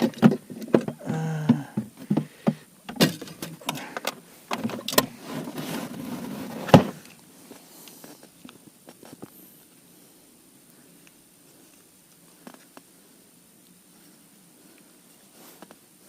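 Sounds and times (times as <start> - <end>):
fishing gear knocking and clattering: 0.0 - 5.1.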